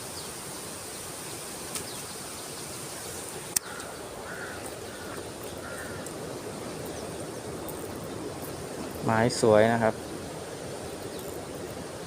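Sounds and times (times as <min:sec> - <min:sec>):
stream water flowing: 0:00.0 - 0:12.0.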